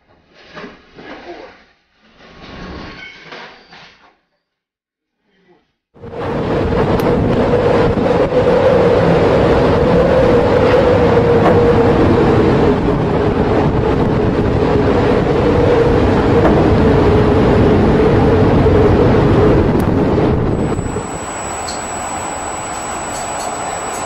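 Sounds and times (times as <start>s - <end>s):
engine drone: 6.0s - 24.0s.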